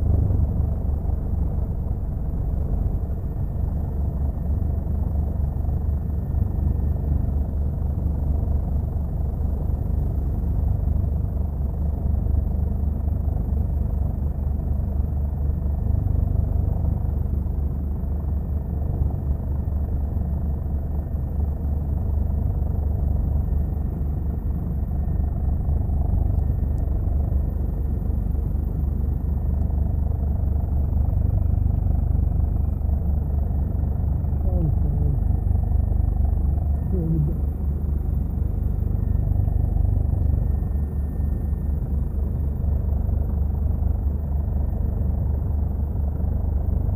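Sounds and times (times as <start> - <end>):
helicopter rotor and engine drone: 0.0 - 46.9.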